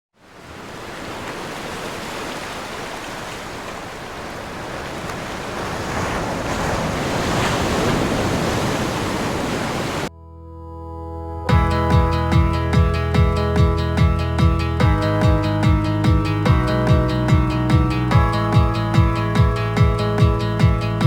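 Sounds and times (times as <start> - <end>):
waterfall rushing water roar: 0.2 - 10.1.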